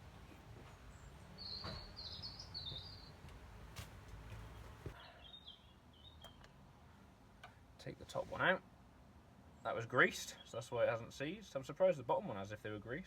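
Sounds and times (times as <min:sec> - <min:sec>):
bird chirping: 0:00.0 - 0:03.4, 0:05.0 - 0:06.6.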